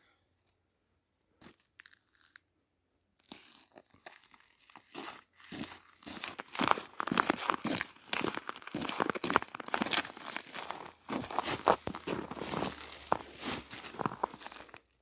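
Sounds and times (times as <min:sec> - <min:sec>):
rustling and crunching: 0:03.2 - 0:15.0.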